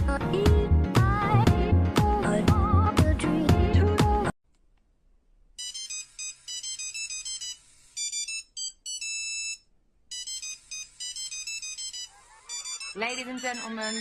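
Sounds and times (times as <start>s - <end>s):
phone ringtone beeping melody: 5.6s - 14.0s.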